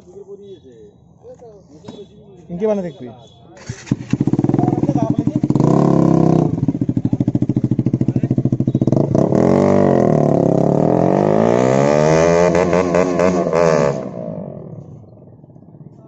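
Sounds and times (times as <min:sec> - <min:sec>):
motorcycle engine revving: 0:03.6 - 0:16.0.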